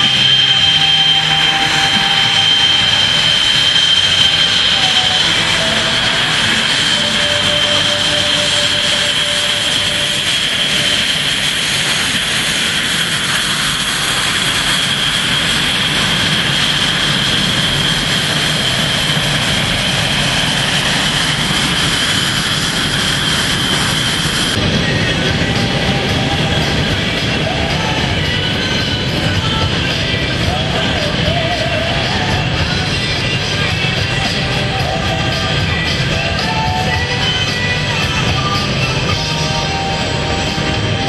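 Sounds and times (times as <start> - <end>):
jet engines whining: 0.0 - 41.0.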